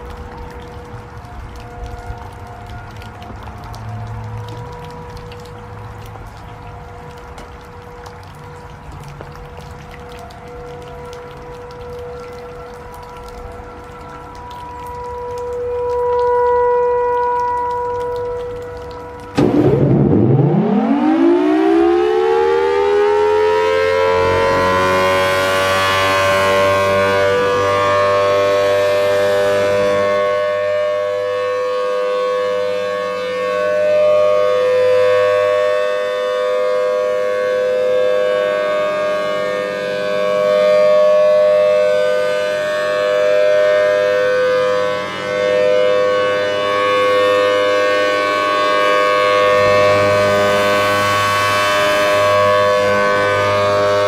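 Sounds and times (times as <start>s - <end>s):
electromechanical warning siren: 0.0s - 54.0s.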